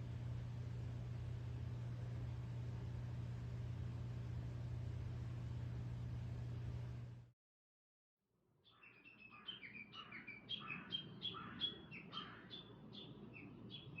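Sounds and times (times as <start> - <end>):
songbird chirping: 8.6 - 14.0.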